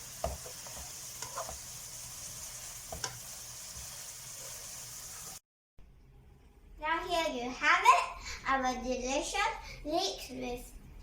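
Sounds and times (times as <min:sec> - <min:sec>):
food sizzling in a hot pan: 0:00.0 - 0:05.4.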